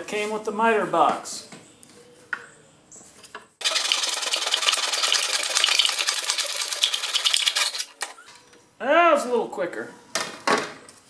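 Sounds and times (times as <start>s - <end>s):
hand saw sawing plastic: 3.6s - 8.2s.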